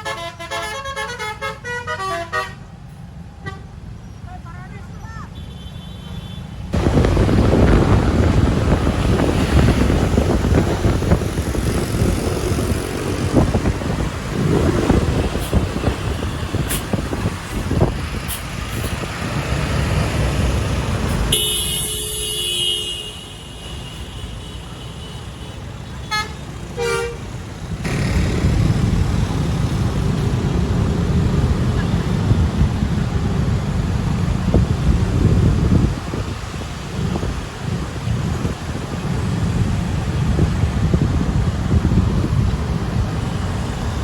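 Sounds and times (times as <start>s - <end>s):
bus musical horn: 0.0s - 2.6s, 3.4s - 3.7s, 21.2s - 27.4s
road and wind noise: 0.0s - 44.0s.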